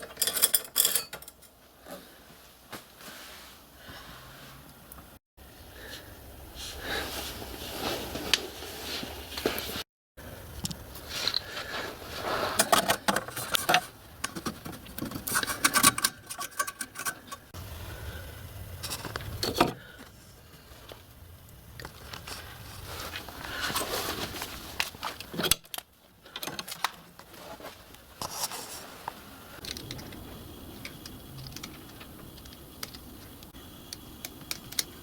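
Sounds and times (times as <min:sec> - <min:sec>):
metal parts and tools clinking: 0:00.0 - 0:01.6, 0:12.6 - 0:17.5.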